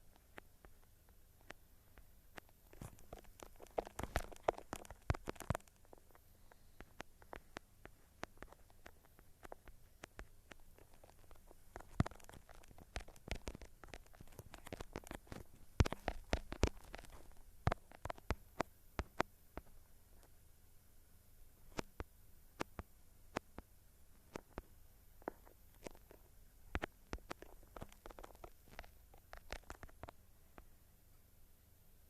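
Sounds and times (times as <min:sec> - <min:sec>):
sharp clicks and taps: 0:00.0 - 0:20.3, 0:21.7 - 0:30.7.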